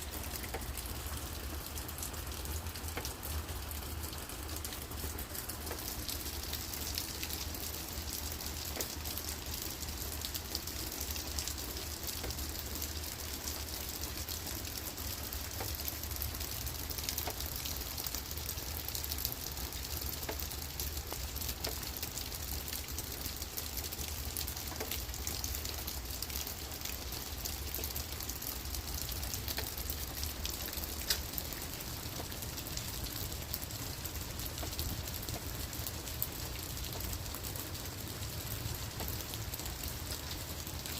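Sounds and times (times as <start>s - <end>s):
rain on leaves and ground: 0.0s - 40.9s.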